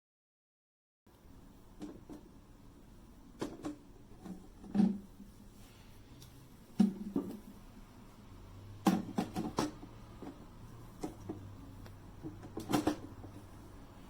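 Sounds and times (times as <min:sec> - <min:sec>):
handling clicks and knocks: 0:08.8 - 0:13.4.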